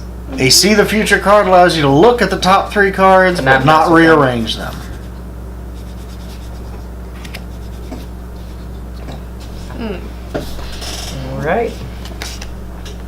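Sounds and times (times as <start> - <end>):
playing cards rubbing and sliding: 4.6 - 5.2, 5.8 - 8.8.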